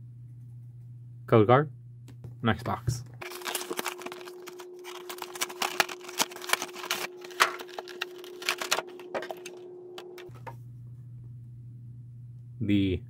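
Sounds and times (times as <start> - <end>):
cardboard box being handled: 3.2 - 9.5.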